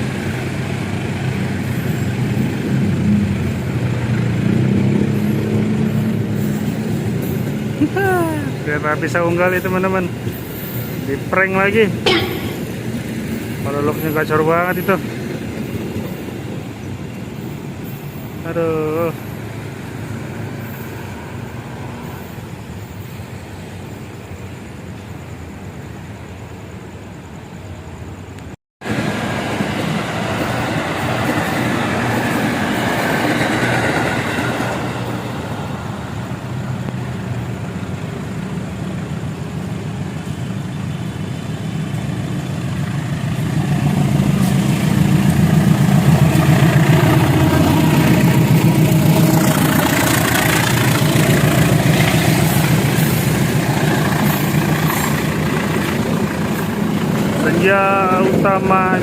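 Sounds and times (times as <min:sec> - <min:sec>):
train wheels rumbling on rails: 0:00.0 - 0:25.8, 0:28.8 - 0:59.0.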